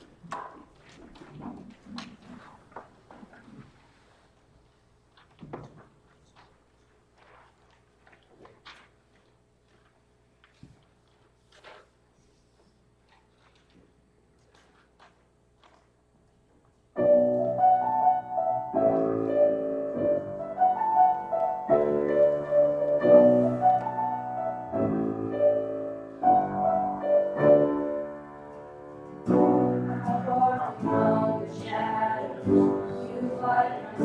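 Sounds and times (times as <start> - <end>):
piano playing slow chords: 17.0 - 34.0.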